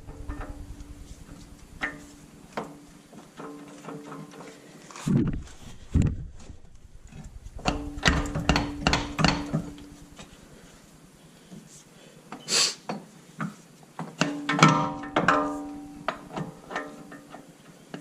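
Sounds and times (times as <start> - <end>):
metal parts and tools knocking: 7.6 - 10.2, 14.2 - 17.4
brief scraping hiss: 12.4 - 12.9.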